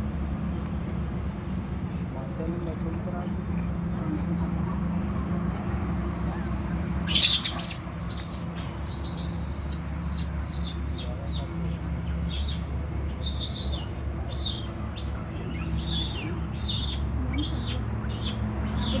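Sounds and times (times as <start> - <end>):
steady low hum: 3.8 - 19.0
high chirping calls: 7.1 - 19.0.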